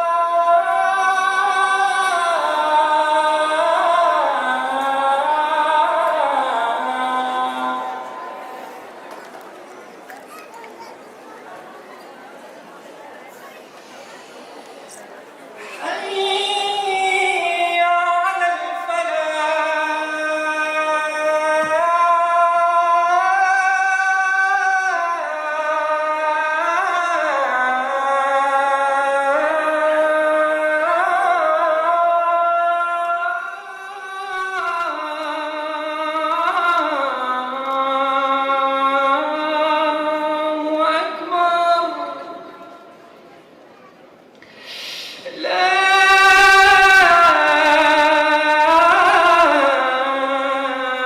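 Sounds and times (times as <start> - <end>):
call to prayer chanted: 0.0 - 44.0, 45.2 - 51.0.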